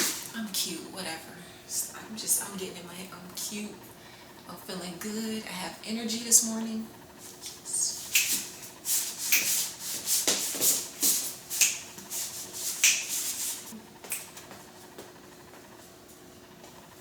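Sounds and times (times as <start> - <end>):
faint steady hum: 0.0 - 17.0
rubbing and scuffing scrapes: 7.2 - 13.8.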